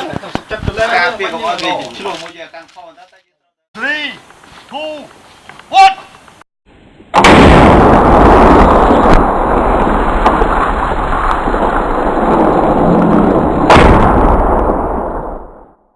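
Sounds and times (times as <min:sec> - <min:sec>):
rocket launcher blast: 0:07.1 - 0:15.8
sharp crack: 0:07.1 - 0:15.8.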